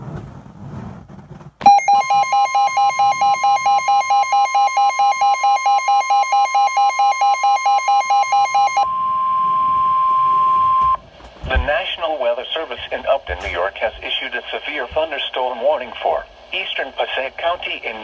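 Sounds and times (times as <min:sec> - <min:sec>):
steady high pure tone: 0:01.6 - 0:18.0
buzzy electronic alarm warbling: 0:01.7 - 0:11.0.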